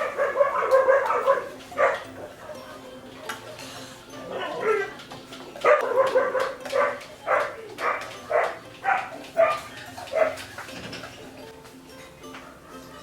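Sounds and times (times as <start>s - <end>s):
dog barking: 0.0s - 2.2s, 5.6s - 10.4s.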